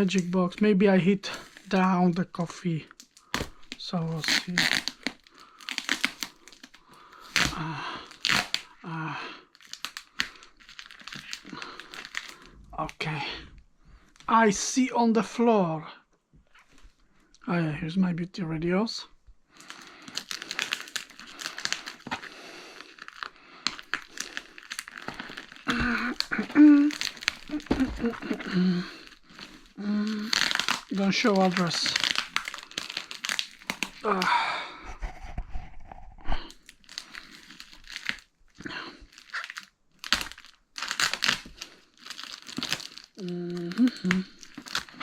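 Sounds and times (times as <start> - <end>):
packaging crinkling and rustling: 1.3 - 8.8, 9.5 - 12.6, 19.5 - 34.2, 34.9 - 45.0.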